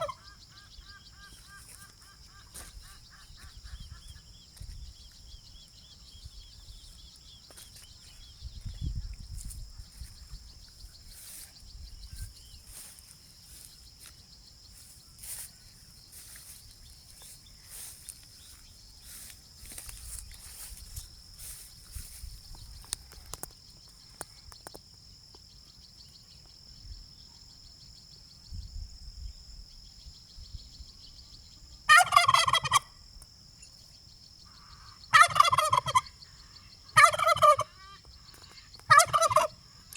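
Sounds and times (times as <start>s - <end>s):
turkey gobbling: 0.0s - 0.6s, 31.9s - 32.9s, 35.1s - 36.1s, 36.9s - 37.8s, 38.9s - 39.6s.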